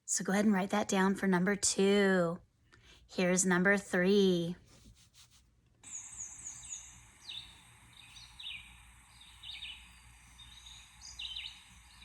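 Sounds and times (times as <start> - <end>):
bird chirping: 5.9 - 12.0.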